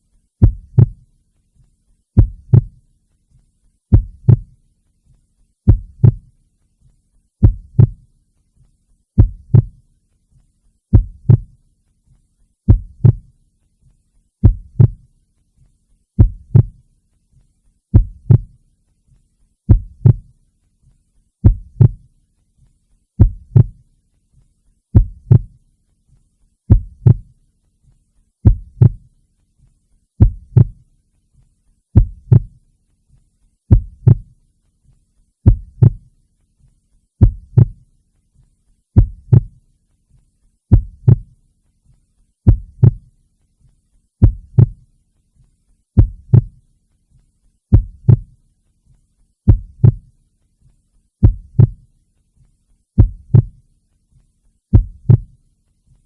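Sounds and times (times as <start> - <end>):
heartbeat thumps: 0.4 - 1.1, 2.2 - 2.8, 3.9 - 4.6, 5.6 - 6.4, 7.4 - 8.1, 9.2 - 9.8, 10.9 - 11.6, 12.7 - 13.3, 14.4 - 15.1, 16.2 - 16.8, 17.9 - 18.6, 19.7 - 20.4, 21.4 - 22.1, 23.2 - 23.8, 24.9 - 25.6, 26.7 - 27.4, 28.4 - 29.1, 30.2 - 30.8, 32.0 - 32.6, 33.7 - 34.4, 35.4 - 36.1, 37.2 - 37.8, 39.0 - 39.6, 40.7 - 41.4, 42.4 - 43.1, 44.2 - 44.9, 46.0 - 46.6, 47.7 - 48.4, 49.5 - 50.1, 51.2 - 51.9, 53.0 - 53.6, 54.7 - 55.4.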